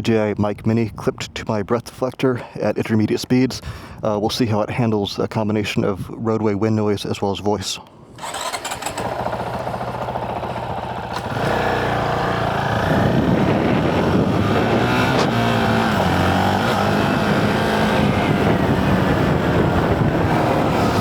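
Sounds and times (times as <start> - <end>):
motorcycle engine accelerating: 8.2 - 21.0
wind rushing over helmet: 10.1 - 21.0.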